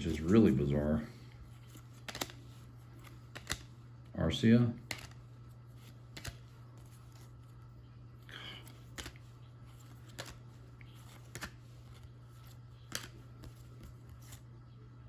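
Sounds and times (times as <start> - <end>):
cards clicking and snapping: 1.6 - 3.8, 4.8 - 7.4, 8.4 - 14.5.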